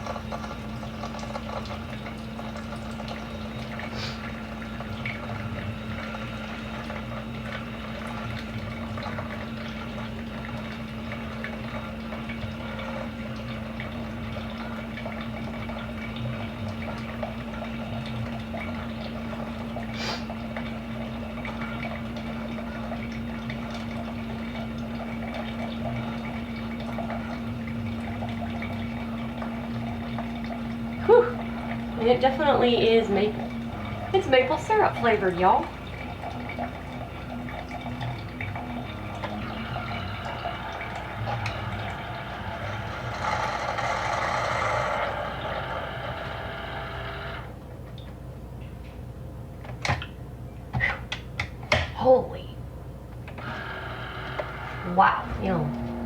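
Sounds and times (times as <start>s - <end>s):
coffee dripping into cup: 0.0s - 48.2s
coffee maker pump hum: 0.0s - 56.0s.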